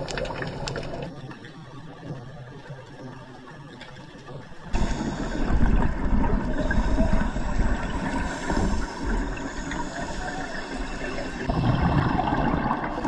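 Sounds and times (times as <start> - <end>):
churning water rumble: 4.5 - 13.0.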